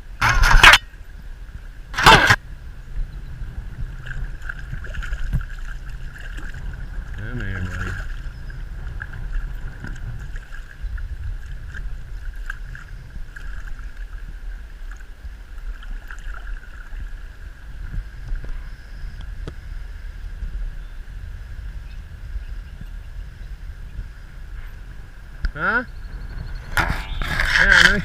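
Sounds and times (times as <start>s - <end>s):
wind rumbling on microphone: 0.0s - 28.0s.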